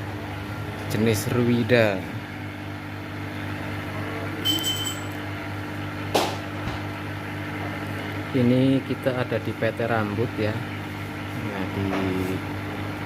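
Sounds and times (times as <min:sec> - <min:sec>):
electrical machine hum: 0:00.0 - 0:13.0
short high beep: 0:04.4 - 0:05.2.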